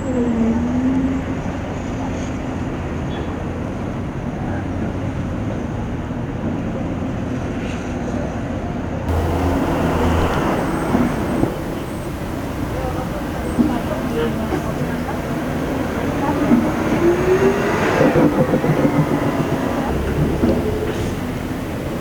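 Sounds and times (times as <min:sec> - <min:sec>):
faint voices: 0:09.1 - 0:22.0
traffic rumble and hiss: 0:09.1 - 0:22.0.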